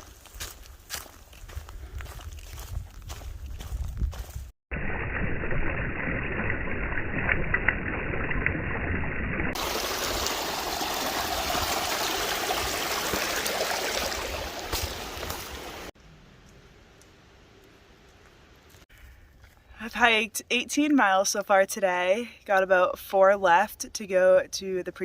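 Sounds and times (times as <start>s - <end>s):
stream water rushing: 9.6s - 15.9s.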